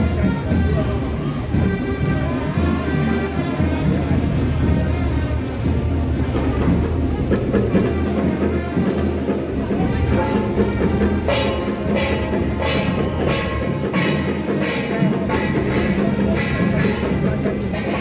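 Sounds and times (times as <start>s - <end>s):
music with drums: 0.0s - 18.0s
sharp percussive crashes: 9.8s - 18.0s.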